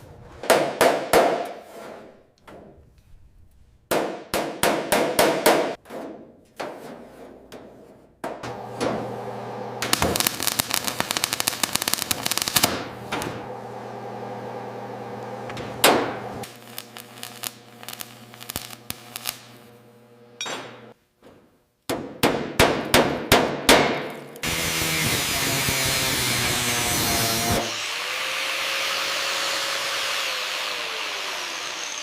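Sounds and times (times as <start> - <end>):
hammer striking metal: 20.4 - 21.0.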